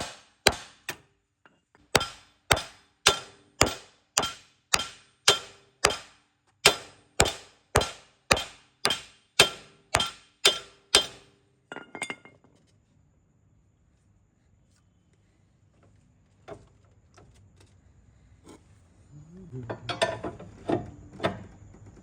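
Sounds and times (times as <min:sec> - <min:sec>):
hammer blows on metal: 0:01.9 - 0:11.3.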